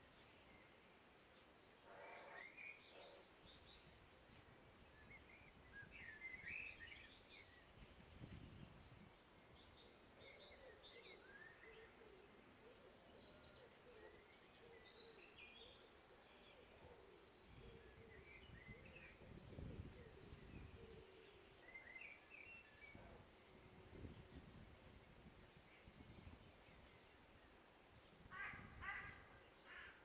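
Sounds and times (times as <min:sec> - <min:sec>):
songbirds chirping and trilling: 0:00.0 - 0:30.0.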